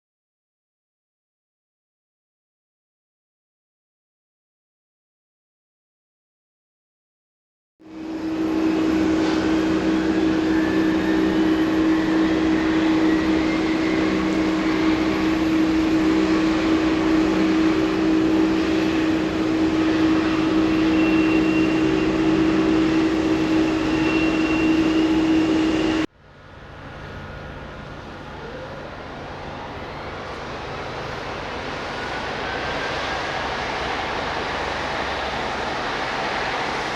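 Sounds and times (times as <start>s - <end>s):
jet engine spooling up: 7.9s - 36.9s
quieter engine sound: 7.9s - 36.9s.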